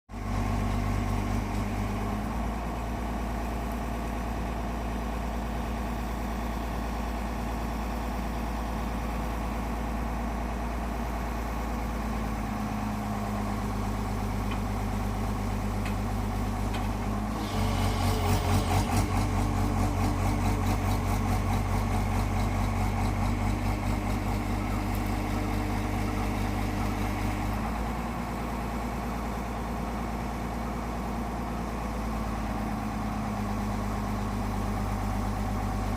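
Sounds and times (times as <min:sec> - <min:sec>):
diesel engine running: 0:00.1 - 0:35.9
auger drill grinding: 0:17.0 - 0:19.6.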